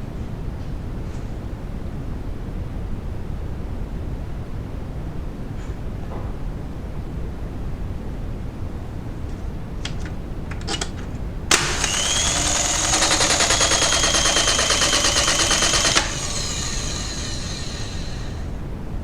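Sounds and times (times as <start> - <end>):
light clicks: 9.8 - 17.5
circuit breaker snap: 9.8 - 18.5
spring-charging motor whirring: 9.9 - 18.6.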